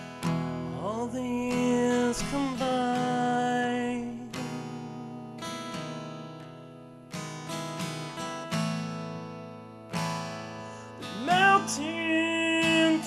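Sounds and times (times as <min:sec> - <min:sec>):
guitar strumming slow chords: 0:00.0 - 0:13.0
person singing: 0:00.8 - 0:04.6, 0:11.0 - 0:13.0.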